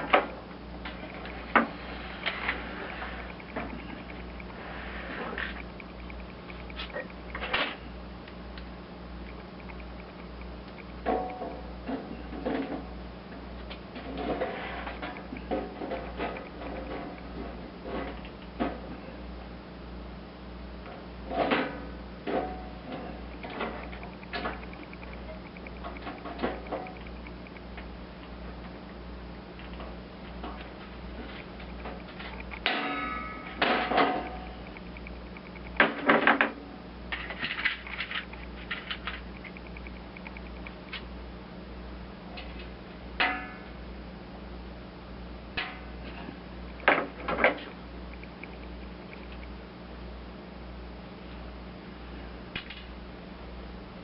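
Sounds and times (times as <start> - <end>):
small metallic ticks: 2.9 - 4.6, 5.4 - 7.4, 8.6 - 11.4, 23.2 - 27.9, 31.4 - 32.8, 34.2 - 35.8, 37.7 - 41.1, 48.1 - 49.6.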